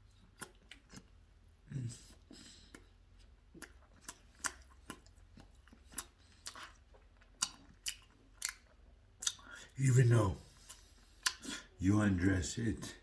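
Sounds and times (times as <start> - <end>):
person chewing: 0.0 - 9.8, 10.4 - 11.8
wet mouth clicks and smacks: 3.5 - 9.5, 10.7 - 11.5.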